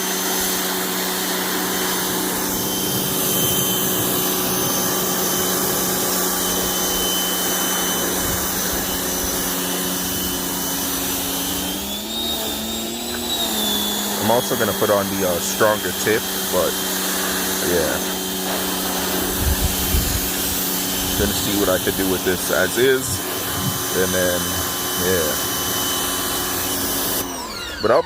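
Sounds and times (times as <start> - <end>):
pressure washer motor humming: 0.0 - 28.0
water spray hissing: 14.3 - 27.2.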